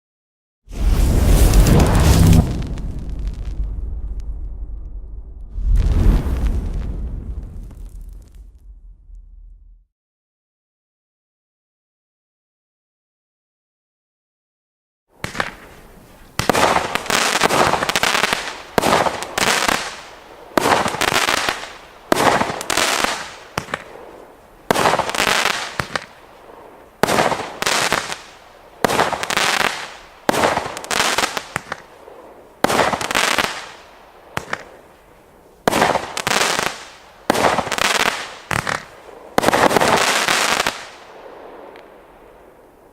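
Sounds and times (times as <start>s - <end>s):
firework shots crackling: 15.2s - 35.0s, 35.6s - 42.4s.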